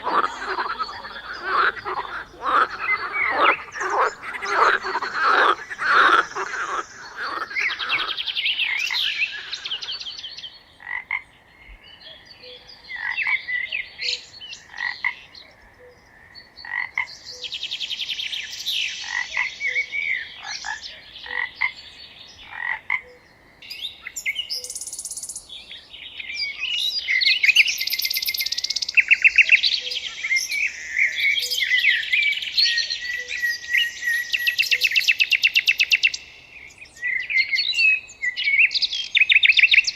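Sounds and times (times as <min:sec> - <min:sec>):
frogs croaking: 0:00.0 - 0:39.9
songbirds singing: 0:00.0 - 0:39.9.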